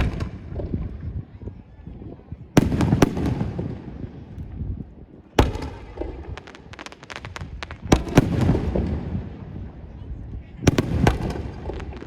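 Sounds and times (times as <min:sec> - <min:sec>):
firework bangs: 0:02.6 - 0:04.3, 0:05.4 - 0:09.7, 0:10.6 - 0:12.0.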